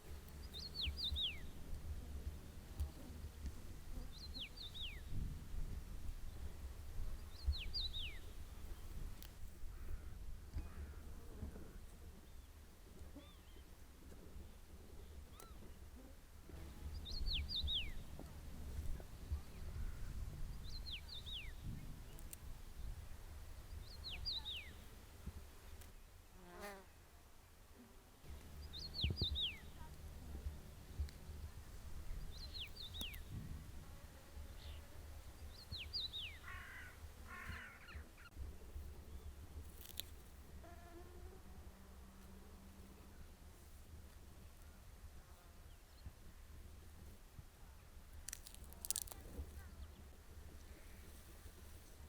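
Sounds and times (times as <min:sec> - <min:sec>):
steady low rumble: 0:28.3 - 0:36.5
songbird whistling: 0:28.6 - 0:29.7
harsh rasping bird calls: 0:35.8 - 0:38.3.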